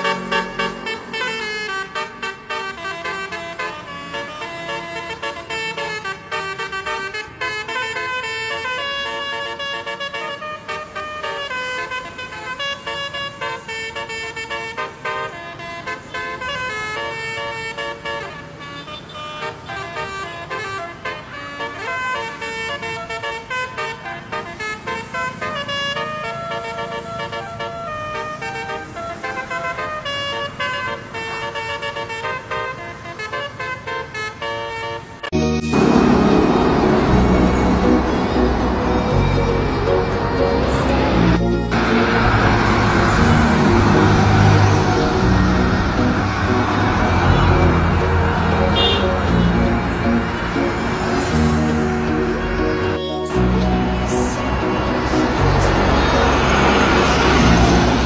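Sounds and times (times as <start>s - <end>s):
multi-tone musical bus horn: 0.0s - 58.0s.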